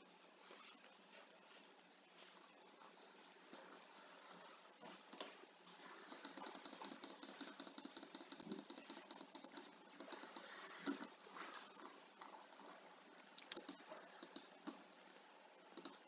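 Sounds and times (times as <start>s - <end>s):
computer keyboard typing: 6.0s - 10.6s, 13.4s - 14.8s, 15.8s - 16.0s.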